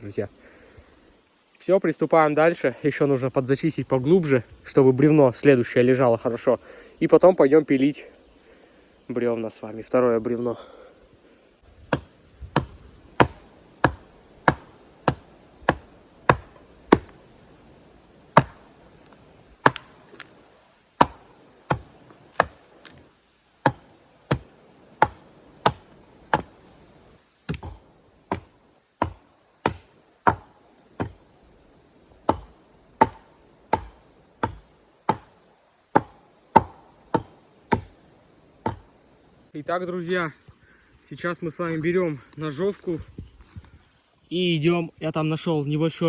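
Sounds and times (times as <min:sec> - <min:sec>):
axe chopping into log: 0:11.9 - 0:17.2, 0:18.4 - 0:18.6, 0:19.6 - 0:20.3, 0:21.0 - 0:23.0, 0:23.6 - 0:26.6, 0:27.5 - 0:31.2, 0:32.3 - 0:35.4, 0:36.0 - 0:38.0, 0:38.7 - 0:38.9.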